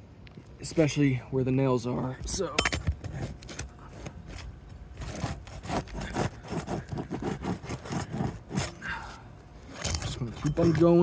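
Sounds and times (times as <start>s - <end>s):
tool scraping under roof shingles: 2.9s - 11.0s.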